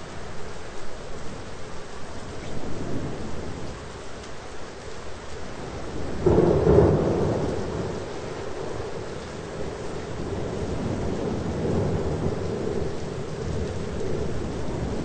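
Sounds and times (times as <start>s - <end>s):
steady rain: 0.0s - 15.0s
thunder clap and rumble: 5.5s - 15.0s.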